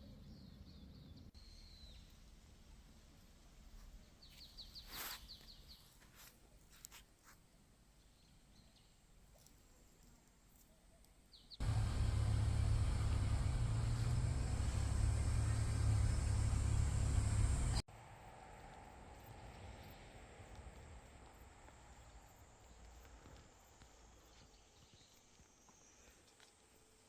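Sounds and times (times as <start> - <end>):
small birds chirping: 4.0 - 6.0, 10.5 - 17.8, 22.0 - 26.8
loud low rumble with hiss: 11.6 - 17.8.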